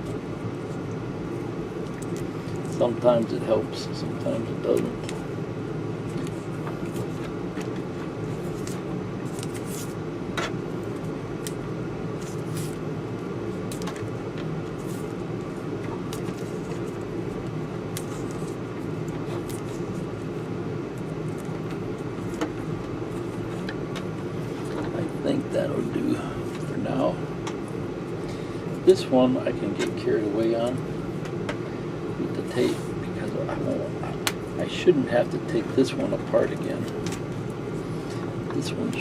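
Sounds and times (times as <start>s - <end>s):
steady mechanical hum: 0.0s - 39.0s.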